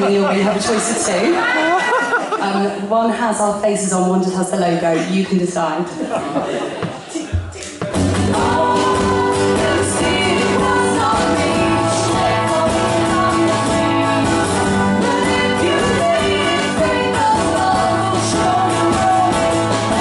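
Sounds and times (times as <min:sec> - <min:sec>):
guitar: 0:07.4 - 0:20.0
band playing live: 0:07.8 - 0:20.0
person singing: 0:07.8 - 0:20.0.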